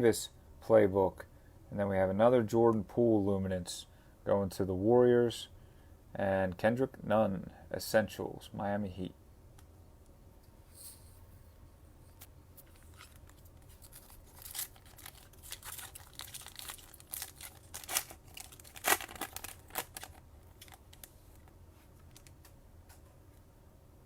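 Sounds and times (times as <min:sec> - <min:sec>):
foil wrapper tearing and crinkling: 0:12.6 - 0:21.4.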